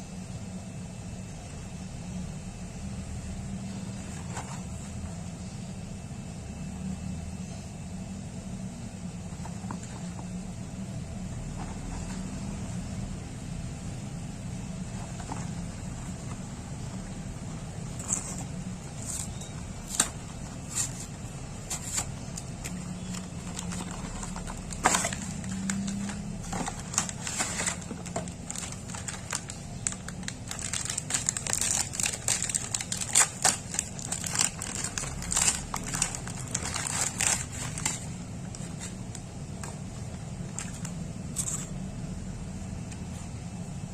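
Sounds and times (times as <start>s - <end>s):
low background hum: 0.0s - 43.9s
plastic packaging crinkling: 9.2s - 12.8s, 14.6s - 41.8s.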